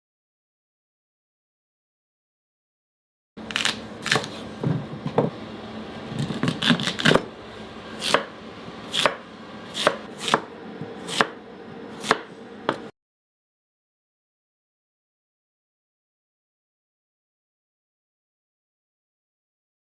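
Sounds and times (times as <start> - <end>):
knife cutting sweet potato: 3.5 - 4.5, 6.2 - 7.3, 8.0 - 8.3, 8.9 - 11.4, 12.0 - 12.8.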